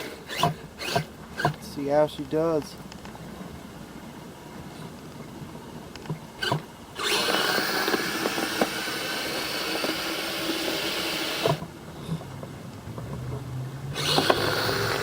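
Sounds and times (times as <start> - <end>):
electric motor whining: 0.0 - 1.7, 6.4 - 12.2, 12.9 - 15.0.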